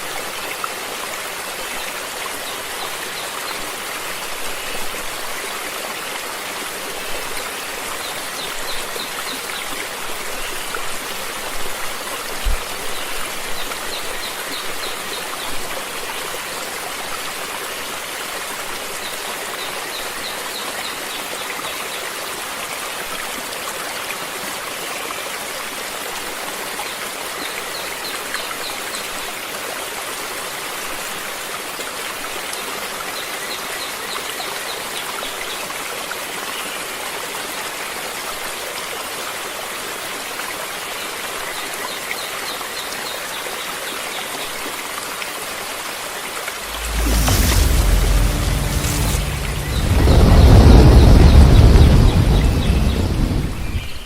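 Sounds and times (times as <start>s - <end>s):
stream water flowing and splashing: 0.0s - 54.0s
brief low thump: 46.6s - 53.9s.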